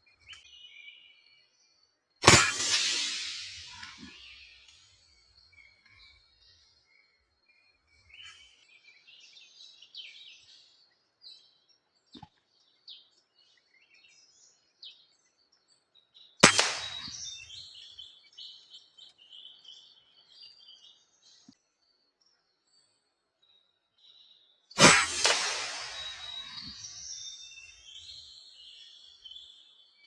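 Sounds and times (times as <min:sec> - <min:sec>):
air rifle shot: 0:02.2 - 0:04.1, 0:16.4 - 0:17.3, 0:24.8 - 0:26.9.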